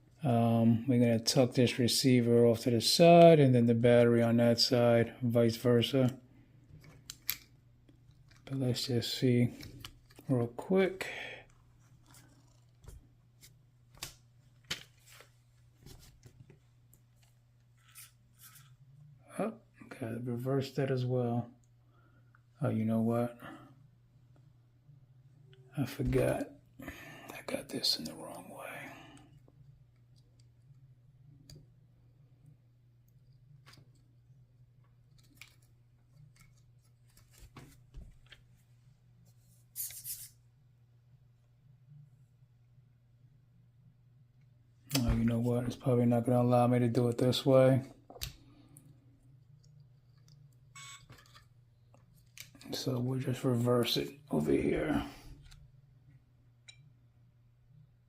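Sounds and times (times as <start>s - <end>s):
low steady hum: 0.0s - 58.0s
clicks of plastic parts handled: 6.7s - 8.6s
plastic parts clicking and rubbing: 34.8s - 38.4s.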